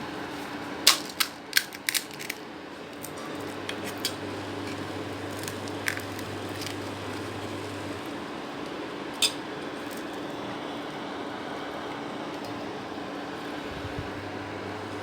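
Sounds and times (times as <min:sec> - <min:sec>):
steady low hum: 0:00.0 - 0:15.0
kitchen utensils clicking: 0:09.2 - 0:09.4.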